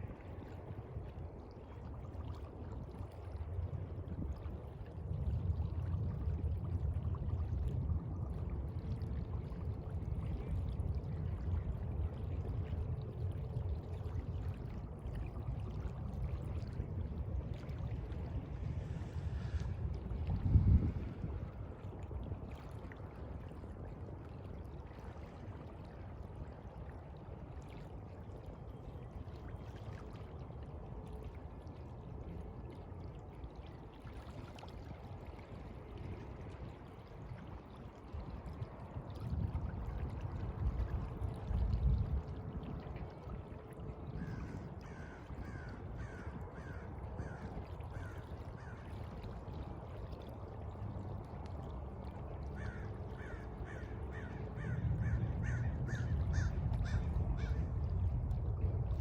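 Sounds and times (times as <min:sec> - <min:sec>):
wind: 0:00.0 - 0:59.0
sea waves washing: 0:17.7 - 0:21.8.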